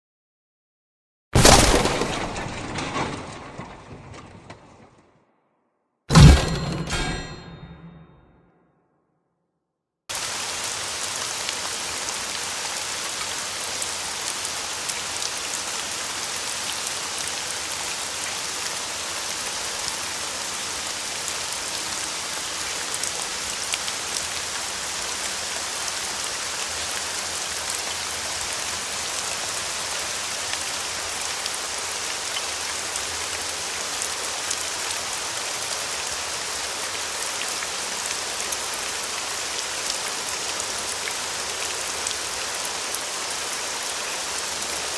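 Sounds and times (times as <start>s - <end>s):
light rain falling: 10.1s - 44.9s
rain drops ticking: 10.1s - 44.9s.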